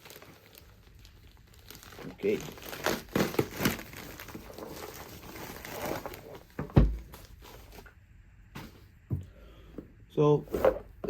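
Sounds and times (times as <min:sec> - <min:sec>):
packaging rustling: 0:00.0 - 0:07.9
box set down with heavy thud: 0:06.5 - 0:07.3.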